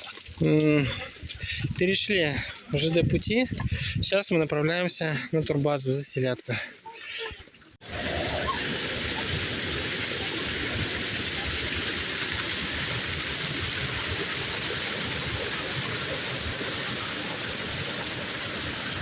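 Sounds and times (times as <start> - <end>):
waterfall rushing: 7.8 - 19.0.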